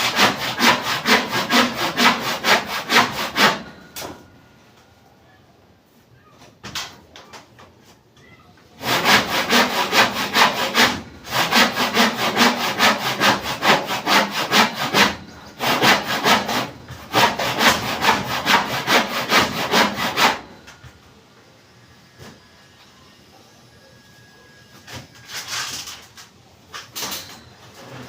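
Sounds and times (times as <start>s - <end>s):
hand saw cutting wood: 0.0s - 4.1s, 8.8s - 20.6s.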